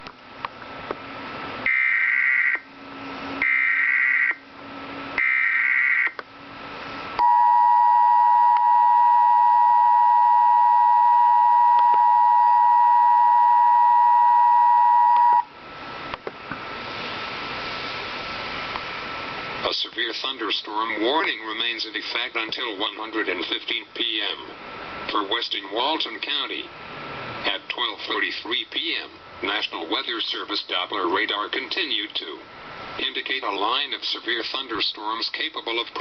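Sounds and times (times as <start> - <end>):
two-tone attention signal: 7.2 - 15.5
hiss: 16.7 - 19.5.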